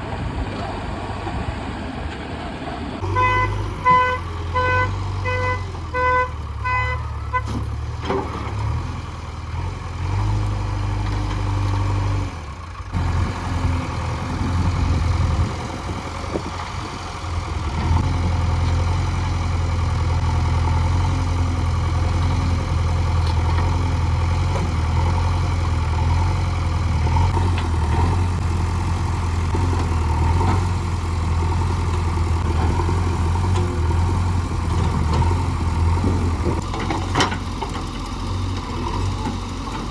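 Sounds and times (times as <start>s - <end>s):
diesel machinery engine running: 0.0s - 39.9s
short horn beeps: 3.1s - 7.6s.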